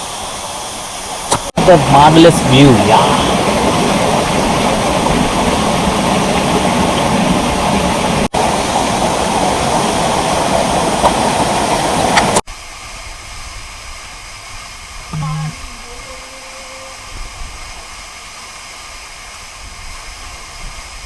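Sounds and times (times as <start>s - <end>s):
waterfall rushing: 1.6s - 12.2s.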